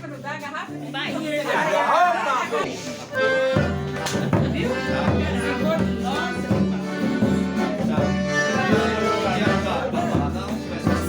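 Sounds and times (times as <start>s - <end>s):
accordion music with beat: 0.0s - 11.0s
person singing: 6.7s - 11.0s.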